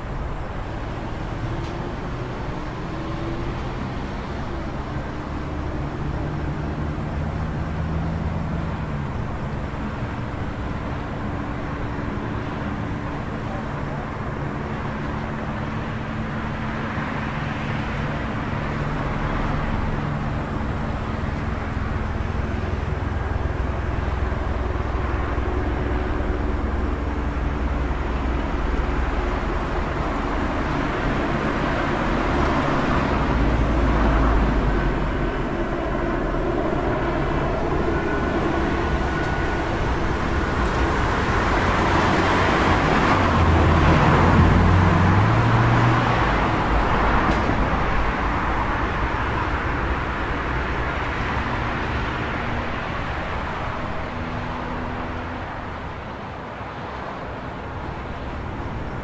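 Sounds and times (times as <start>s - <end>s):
low engine hum: 0.0s - 59.0s
street traffic noise: 0.0s - 59.0s.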